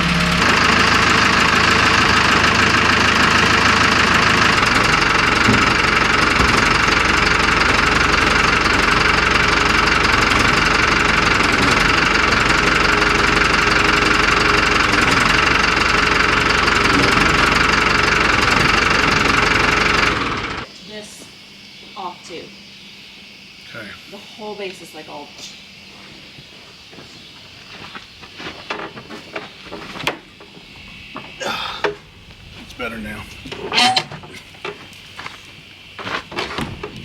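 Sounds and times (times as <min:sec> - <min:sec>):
backhoe engine running: 0:00.0 - 0:20.7, 0:30.4 - 0:37.0
knocking clatter: 0:00.3 - 0:20.6.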